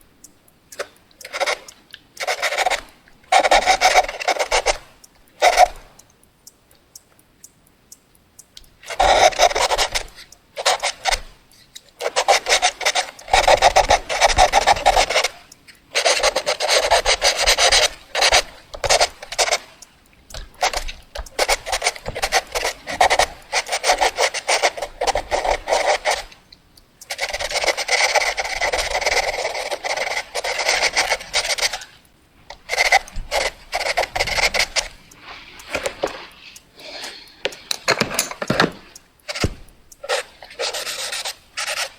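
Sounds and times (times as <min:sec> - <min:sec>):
scratchy drawing on paper: 0:08.9 - 0:11.2, 0:12.0 - 0:19.6, 0:20.4 - 0:26.3, 0:27.1 - 0:31.9, 0:32.6 - 0:37.6, 0:39.3 - 0:41.9.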